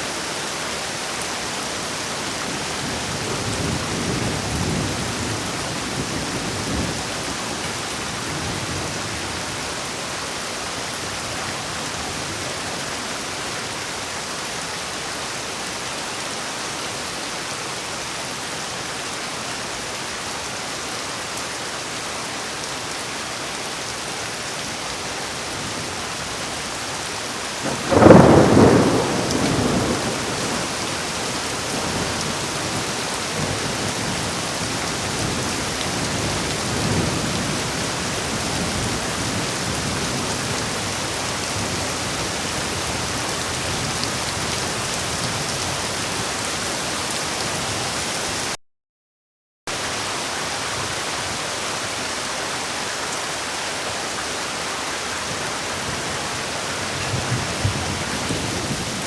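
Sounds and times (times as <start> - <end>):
heavy rain falling: 0.0 - 48.6, 49.7 - 59.0
thunderclap rumbling: 27.6 - 34.4, 55.8 - 59.0.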